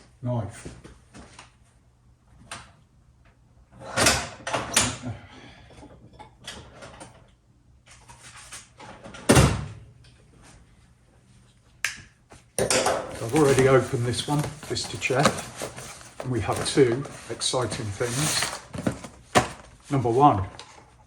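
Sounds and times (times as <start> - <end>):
cardboard parcel knocks and thuds: 13.1 - 17.1, 18.6 - 19.7
cardboard rustling: 13.1 - 20.6.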